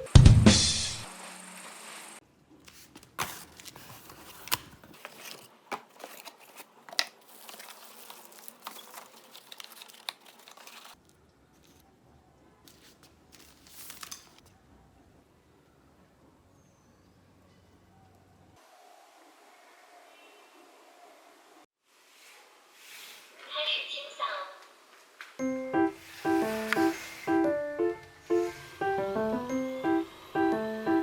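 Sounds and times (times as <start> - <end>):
plastic and cardboard crinkling: 2.5 - 11.9, 12.6 - 14.5.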